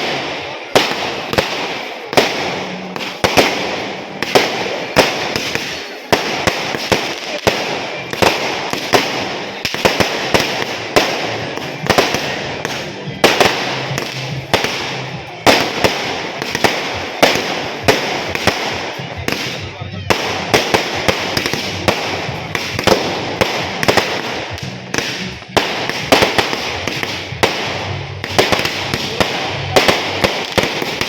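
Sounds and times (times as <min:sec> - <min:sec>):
firecracker bangs: 0:00.0 - 0:31.0
firecrackers crackling: 0:00.0 - 0:31.0.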